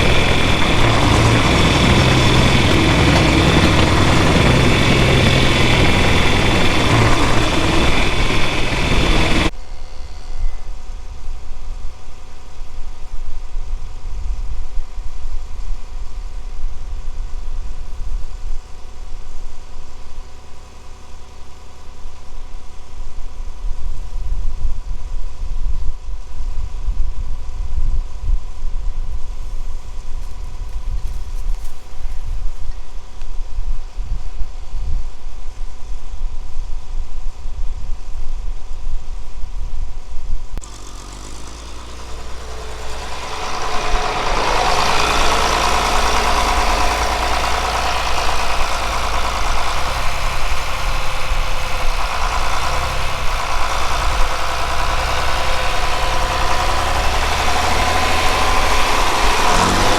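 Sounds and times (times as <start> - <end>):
low rumble: 0.0 - 9.5
vehicle engine running: 0.0 - 9.5, 40.6 - 59.9.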